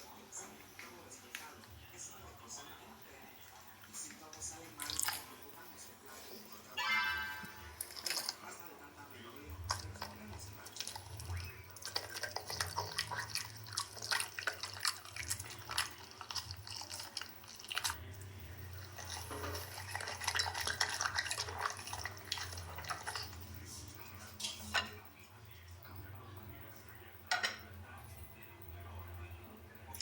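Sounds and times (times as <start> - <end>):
dog eating noisily: 7.8 - 24.4.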